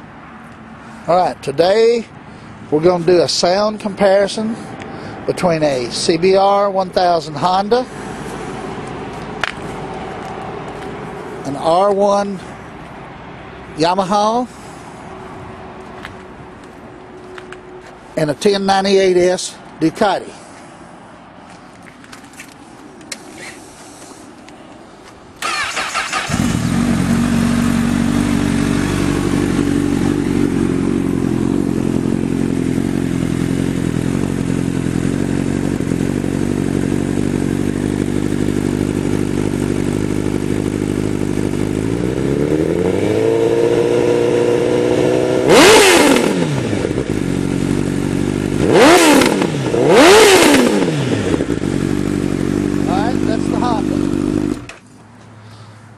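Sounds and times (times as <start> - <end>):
motorcycle throttle blips: 25.4 - 54.8
motorcycle engine starting and idling: 25.4 - 54.9.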